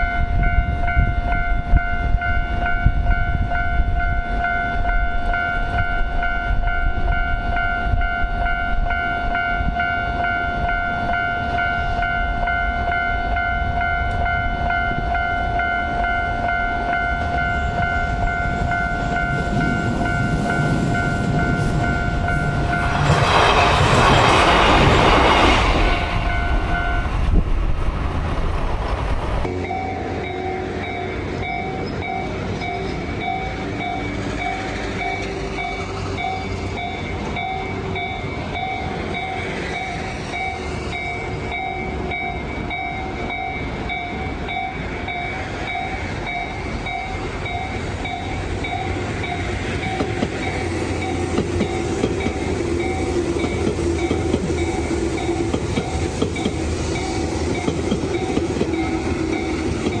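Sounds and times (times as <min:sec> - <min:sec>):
level-crossing warning bell: 0:00.0 - 0:27.4, 0:29.4 - 1:00.0
train rumble and wheel clatter: 0:00.0 - 1:00.0.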